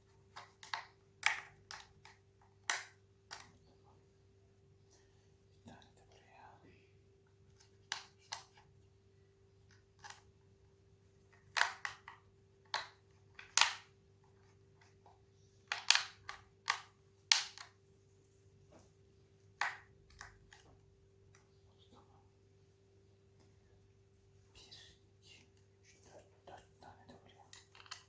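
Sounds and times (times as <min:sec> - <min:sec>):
hard plastic parts clicking: 0:15.6 - 0:17.7.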